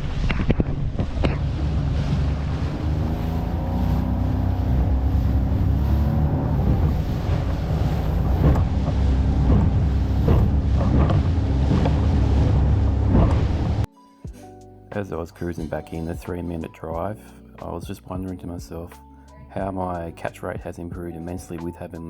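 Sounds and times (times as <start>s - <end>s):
boat motor running: 0.0s - 13.9s
wind buffeting microphone: 0.0s - 13.9s.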